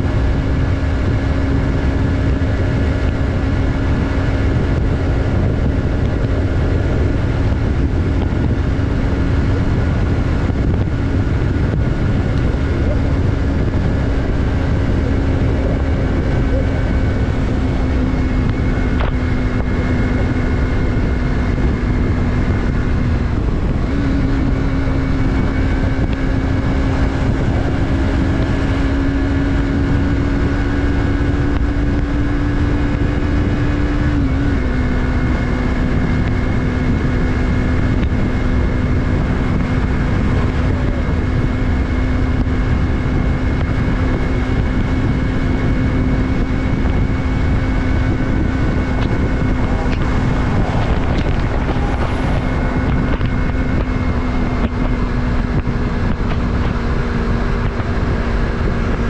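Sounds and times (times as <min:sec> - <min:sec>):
motorcycle engine cruising: 0:00.0 - 0:59.0
wind and road rush: 0:00.0 - 0:59.0.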